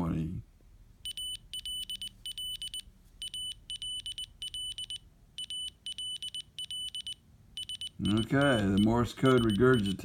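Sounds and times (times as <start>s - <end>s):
high-pitched morse code beeps: 1.0s - 10.0s.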